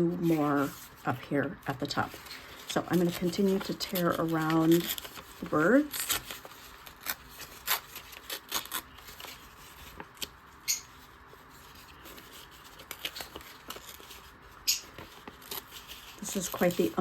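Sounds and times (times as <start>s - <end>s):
paper being torn: 3.0s - 10.3s, 11.6s - 14.3s, 14.9s - 17.0s.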